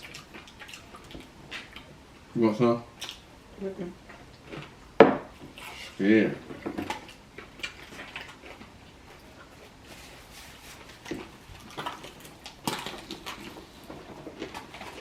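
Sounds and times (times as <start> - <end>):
chewing and mouth sounds: 0.0 - 2.3, 2.9 - 3.3, 4.0 - 15.0.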